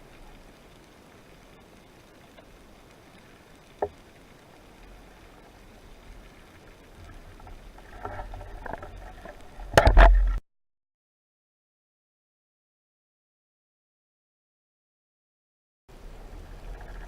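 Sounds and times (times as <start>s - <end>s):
water sloshing underwater: 0.0s - 10.4s, 15.9s - 17.0s
water splashing: 0.0s - 10.4s, 15.9s - 17.0s.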